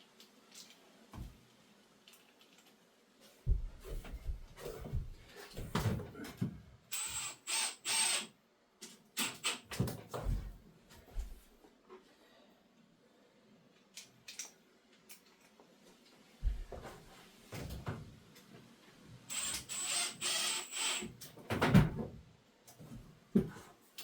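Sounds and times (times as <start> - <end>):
cordless drill running: 6.9 - 8.3, 19.3 - 21.1.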